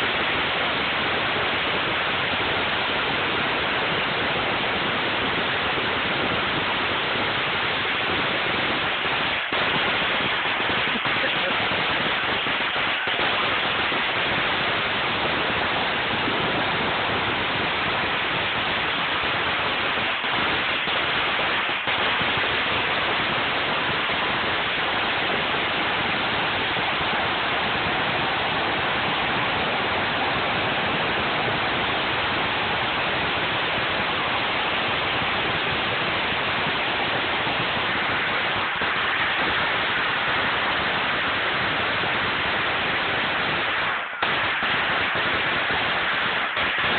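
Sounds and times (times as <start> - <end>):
firecrackers crackling: 0.0 - 46.9.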